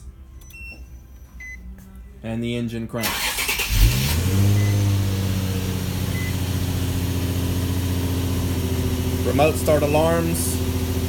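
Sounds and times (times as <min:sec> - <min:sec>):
car engine starting and idling: 0:03.0 - 0:11.0.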